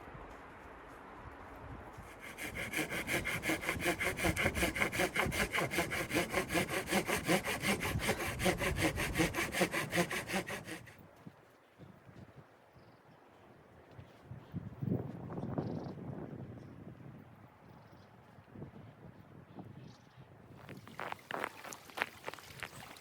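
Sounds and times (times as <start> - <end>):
hand saw cutting wood: 2.1 - 11.0.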